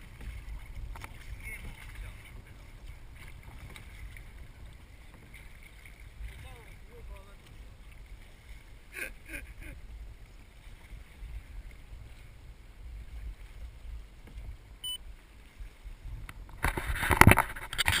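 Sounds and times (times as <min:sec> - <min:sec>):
wind buffeting microphone: 0:00.0 - 0:06.8, 0:15.5 - 0:18.0.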